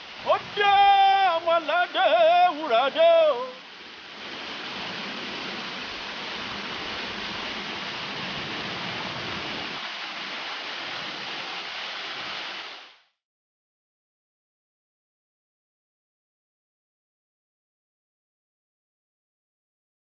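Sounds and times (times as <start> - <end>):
waterfall rushing: 0.0 - 13.1.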